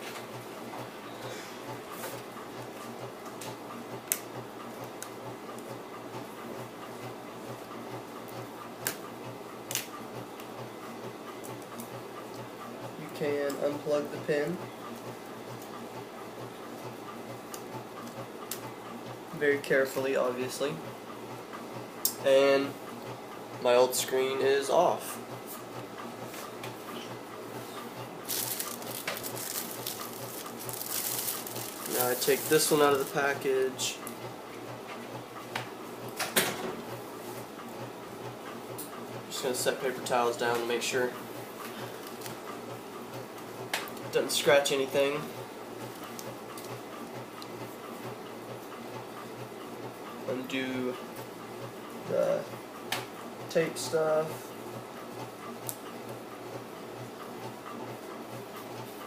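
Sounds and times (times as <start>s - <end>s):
plastic packaging crinkling: 28.2s - 33.4s.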